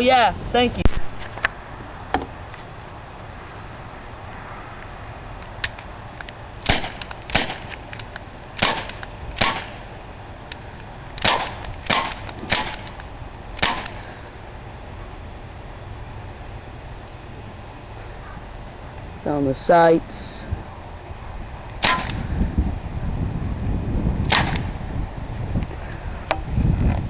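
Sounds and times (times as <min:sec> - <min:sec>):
air pistol sharp cracks: 0:06.6 - 0:09.9, 0:11.2 - 0:14.1, 0:21.8 - 0:22.3, 0:24.2 - 0:24.8.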